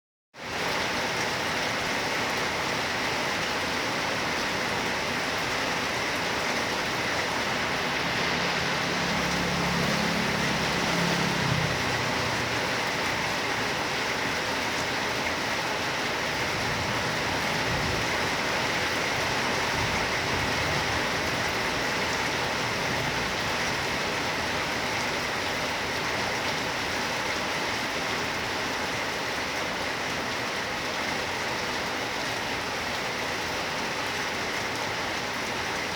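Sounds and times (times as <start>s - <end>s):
heavy rain pouring: 0.4s - 35.9s.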